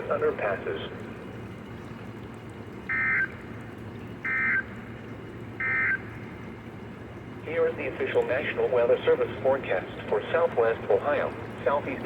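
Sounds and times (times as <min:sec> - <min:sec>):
steady radio hiss: 0:07.4 - 0:12.0.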